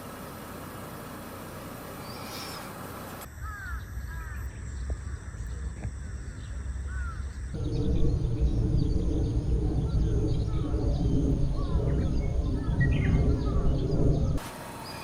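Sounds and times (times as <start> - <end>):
birds calling: 6.9 - 14.4
low rumble: 7.6 - 14.4.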